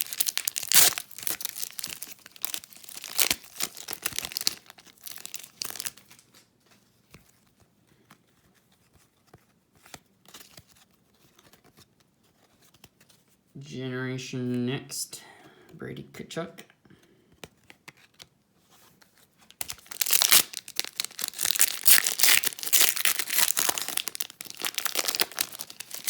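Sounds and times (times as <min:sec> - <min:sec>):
card wrapper crinkling and tearing: 0:00.0 - 0:06.5, 0:19.0 - 0:26.0
light ticks of cards handled: 0:05.9 - 0:13.4.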